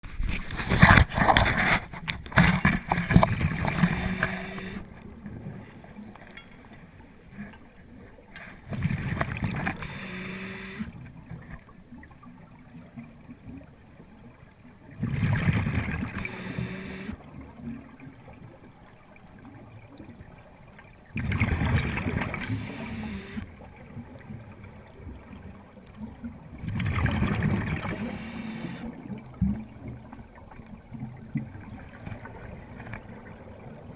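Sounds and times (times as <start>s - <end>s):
exhaled bubbles underwater: 10.8s - 33.9s.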